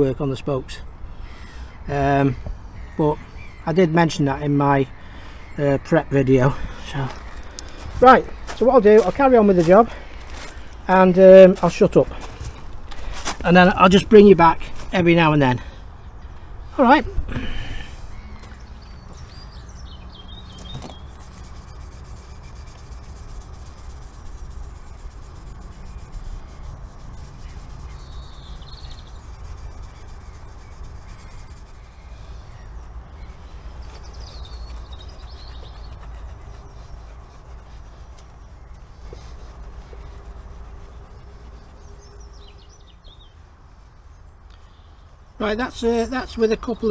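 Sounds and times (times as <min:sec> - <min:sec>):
birds chirping: 0:00.0 - 0:46.9
wire wool rubbing on metal: 0:21.0 - 0:42.8.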